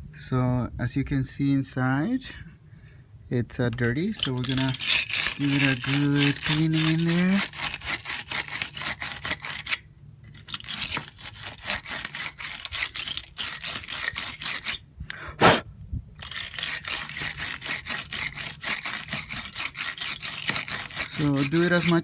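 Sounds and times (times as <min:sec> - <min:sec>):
wire brush scraping metal clamp: 0:03.8 - 0:14.8, 0:16.2 - 0:22.0.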